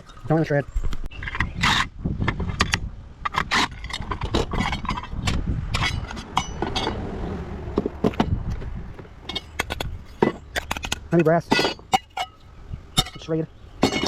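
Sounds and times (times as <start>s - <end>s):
parts scraping: 0.0s - 14.0s
metal and plastic pieces clinking: 9.2s - 12.4s, 13.0s - 14.0s.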